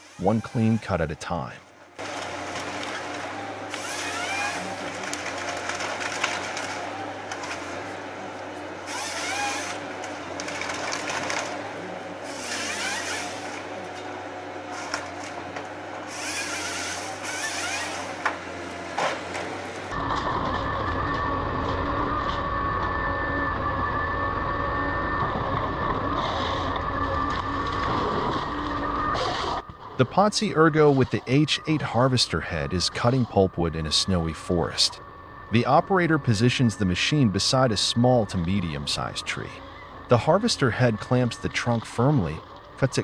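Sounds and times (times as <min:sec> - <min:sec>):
steady machine hum: 0:00.0 - 0:43.0
chainsaw cutting timber: 0:03.7 - 0:05.2, 0:08.9 - 0:09.8, 0:12.3 - 0:13.6, 0:16.1 - 0:18.3.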